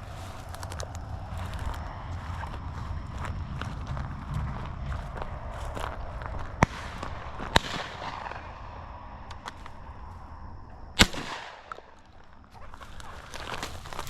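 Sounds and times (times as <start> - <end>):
shotgun shots: 6.6 - 8.8, 11.0 - 12.1
gunshot echo: 6.6 - 8.9, 11.0 - 12.0.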